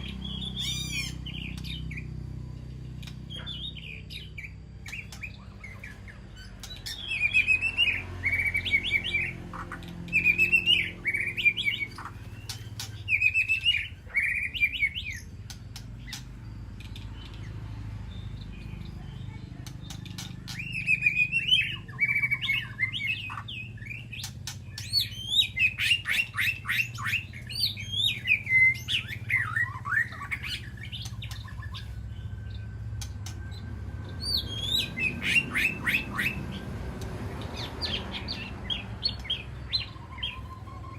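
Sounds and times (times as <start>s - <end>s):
bird singing whistled phrases: 6.7s - 9.3s, 10.1s - 15.3s, 18.7s - 36.6s, 37.6s - 40.9s
sharp clicks: 15.4s - 17.0s.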